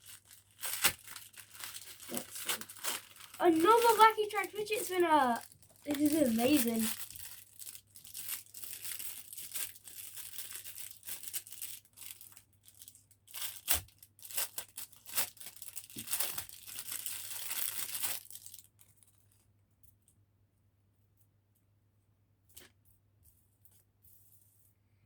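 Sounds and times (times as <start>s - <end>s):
wrapping torn and crinkled: 0.0s - 19.4s.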